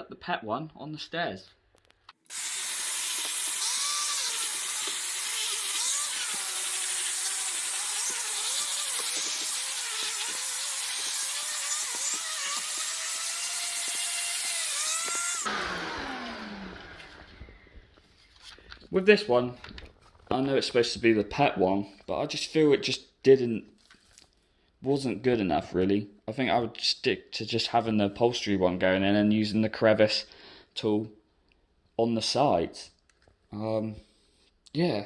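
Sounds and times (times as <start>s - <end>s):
vacuum motor winding down: 2.3s - 17.8s
vacuum cleaner running: 14.7s - 17.8s.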